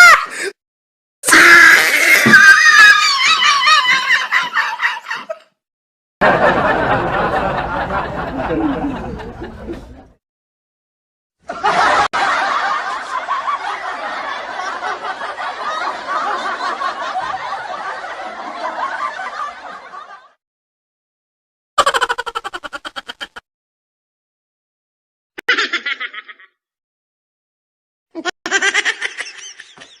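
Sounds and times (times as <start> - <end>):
people laughing: 2.6 - 5.4, 6.2 - 10.2, 11.5 - 20.4, 21.8 - 23.4, 25.4 - 26.5, 28.2 - 30.0.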